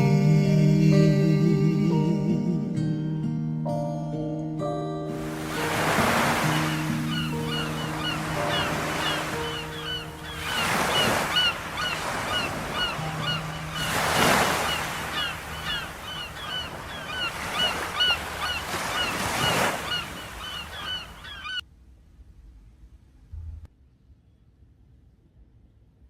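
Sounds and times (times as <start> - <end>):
gulls crying: 5.2 - 21.6
ocean waves washing in: 5.2 - 21.6.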